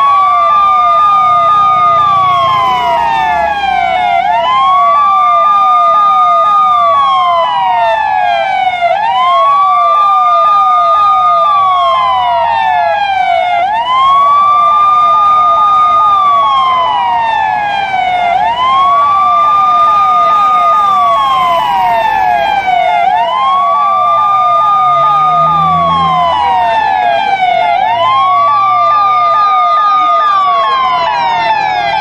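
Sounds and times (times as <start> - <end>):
quick sweeping siren tone: 0.0 - 9.0, 15.4 - 29.4
police car siren wailing: 0.0 - 32.0.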